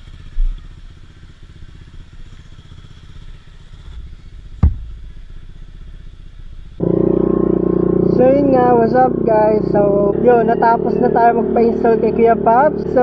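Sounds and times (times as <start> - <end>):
scooter engine running: 0.0 - 13.0
sharp thump: 3.9 - 6.0.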